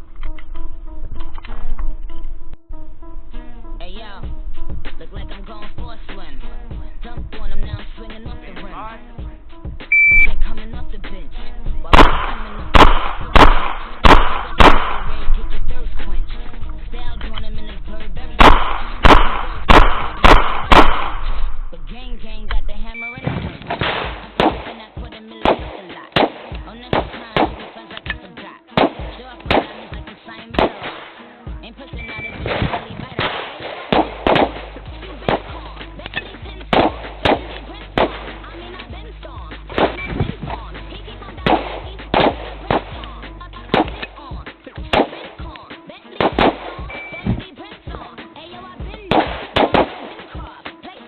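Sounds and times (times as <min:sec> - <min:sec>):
music: 0:00.0 - 0:51.0
handgun shots: 0:11.9 - 0:15.4, 0:18.4 - 0:21.6, 0:23.2 - 0:31.4, 0:32.0 - 0:38.5, 0:39.7 - 0:40.7, 0:41.4 - 0:44.3, 0:44.9 - 0:47.5, 0:49.1 - 0:50.4.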